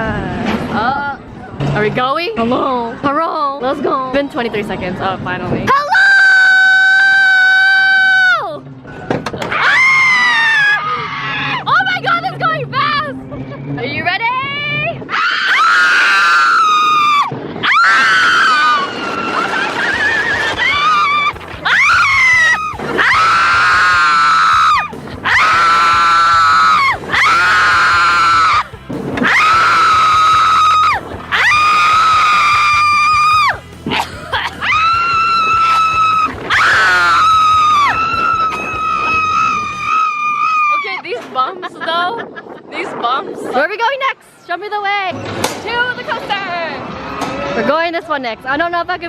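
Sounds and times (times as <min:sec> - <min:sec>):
riders screaming: 0:09.5 - 0:11.8, 0:15.1 - 0:41.1.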